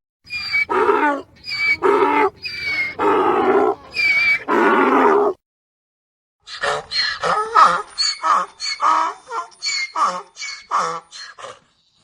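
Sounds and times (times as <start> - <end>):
donkey braying: 0.3 - 5.4.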